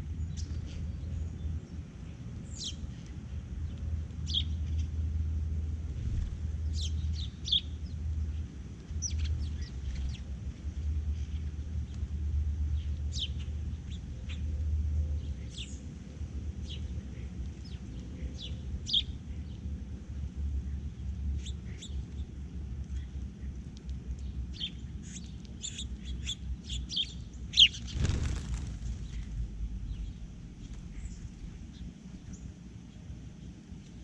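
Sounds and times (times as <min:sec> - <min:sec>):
small birds chirping: 0:00.0 - 0:05.0, 0:06.6 - 0:10.4, 0:20.6 - 0:33.6
steady low rumble: 0:00.0 - 0:33.6.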